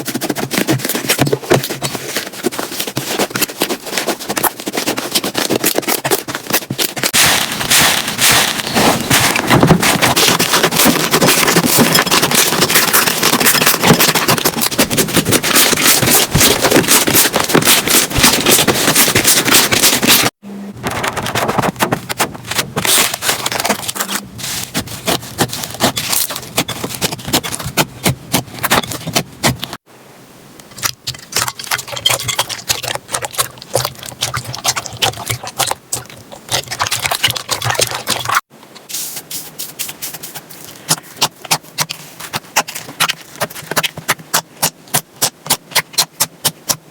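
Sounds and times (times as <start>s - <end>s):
slime crackling and popping: 5.0s - 20.3s.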